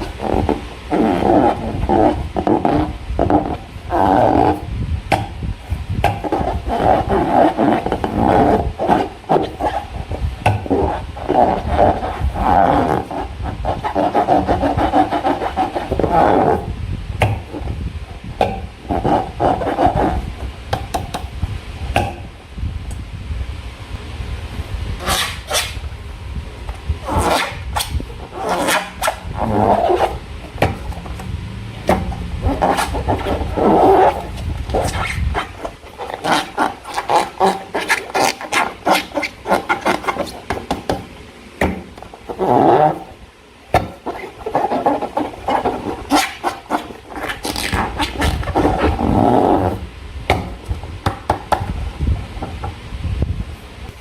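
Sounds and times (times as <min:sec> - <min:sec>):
slime rubbing and squishing: 0:00.0 - 0:04.8, 0:05.6 - 0:20.5, 0:25.0 - 0:25.8, 0:27.0 - 0:40.9, 0:42.0 - 0:43.2, 0:43.8 - 0:49.9
low rumble: 0:30.2 - 0:34.8.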